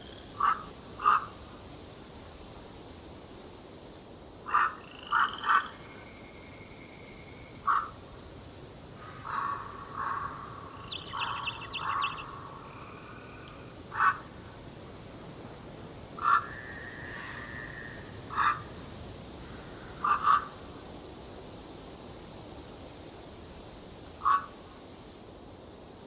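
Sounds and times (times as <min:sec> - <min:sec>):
background hiss: 0:00.0 - 0:26.0
harsh bird calls: 0:09.0 - 0:14.3, 0:16.2 - 0:18.7, 0:19.4 - 0:20.6
bird trill: 0:09.2 - 0:13.4.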